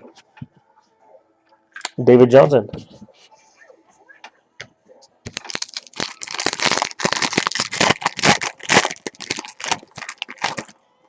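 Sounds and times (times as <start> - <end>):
foil wrapper tearing and crinkling: 5.3 - 10.7.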